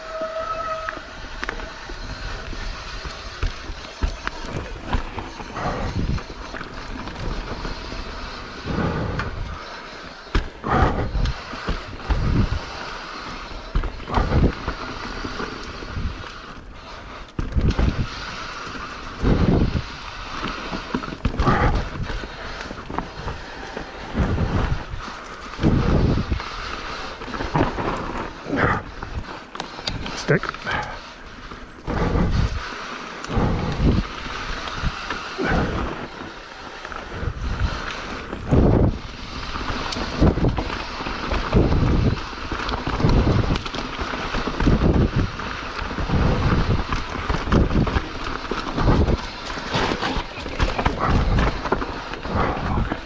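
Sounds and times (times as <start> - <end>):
bike tyres rolling on dirt: 0.0 - 53.0.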